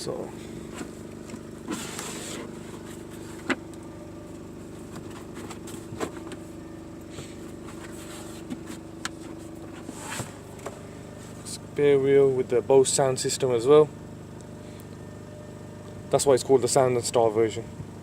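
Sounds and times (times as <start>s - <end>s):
low hum: 0.0s - 16.8s
rustling in car boot: 0.5s - 3.7s, 4.4s - 11.6s.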